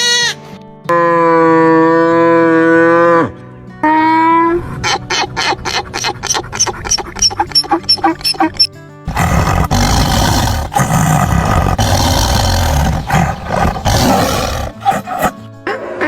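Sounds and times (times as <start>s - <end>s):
big cat roaring: 9.1s - 15.4s.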